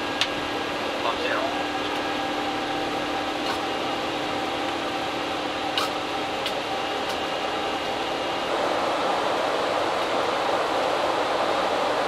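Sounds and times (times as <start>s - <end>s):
airflow and air conditioning hiss: 5.3s - 12.0s.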